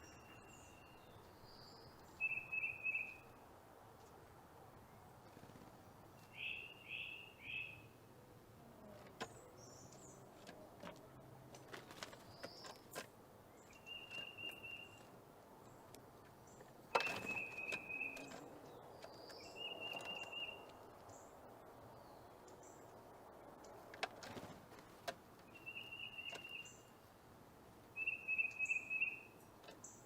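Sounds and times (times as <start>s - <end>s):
high bird chirps: 2.1s - 3.3s, 13.6s - 15.1s, 17.0s - 18.5s, 19.1s - 20.7s, 25.5s - 26.9s, 28.0s - 29.4s.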